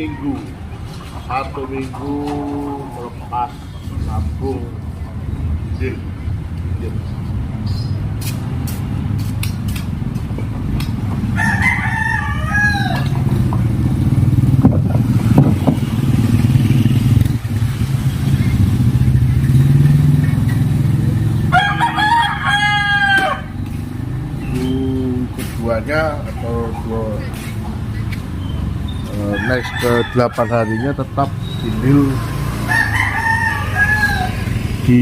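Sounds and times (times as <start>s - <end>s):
rooster crowing: 11.3s - 13.2s, 21.5s - 23.6s, 29.1s - 31.6s, 32.5s - 34.6s.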